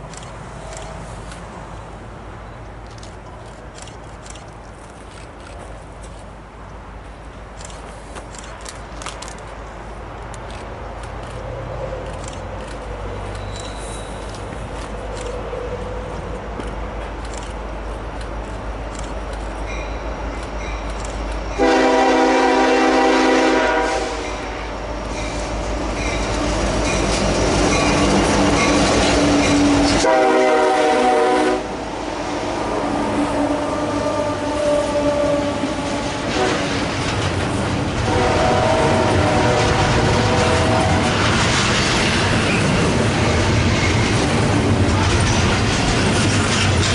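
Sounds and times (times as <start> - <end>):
train rumble and wheel noise: 0.0 - 46.9
locomotive air horn: 21.6 - 24.8, 29.6 - 31.8, 32.7 - 36.8, 38.0 - 41.2.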